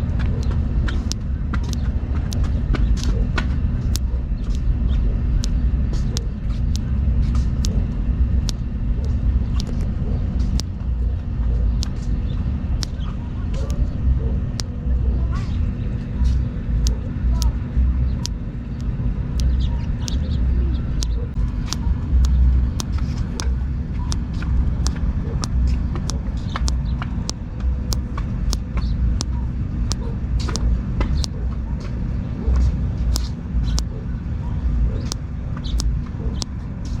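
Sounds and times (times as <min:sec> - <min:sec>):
low rumble: 0:00.0 - 0:37.0
thumb joint cracking: 0:05.4 - 0:12.2.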